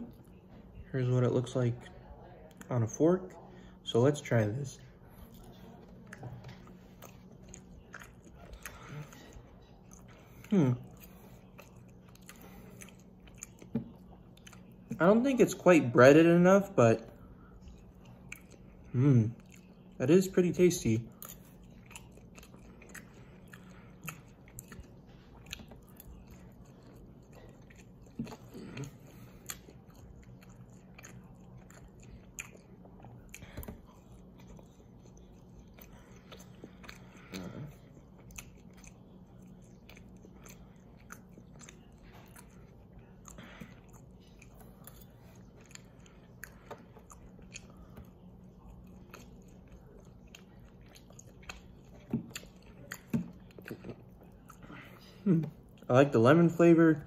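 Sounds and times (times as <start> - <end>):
faint steady hum: 0.0 - 57.0
person chewing food: 4.7 - 16.0, 16.6 - 55.9.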